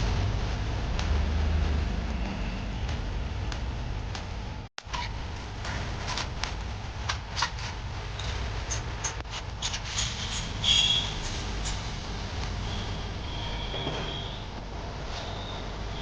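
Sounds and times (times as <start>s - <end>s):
low hum: 0.0s - 16.0s
high squeak: 9.9s - 11.3s, 12.7s - 14.5s.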